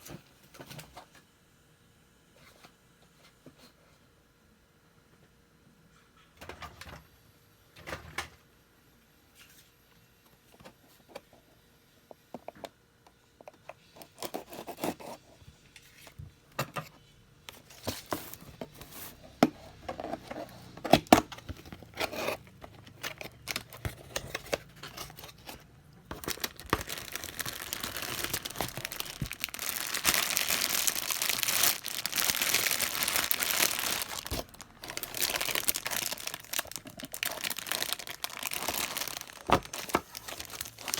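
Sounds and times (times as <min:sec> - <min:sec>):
packaging crinkling and tearing: 0:17.7 - 0:40.9.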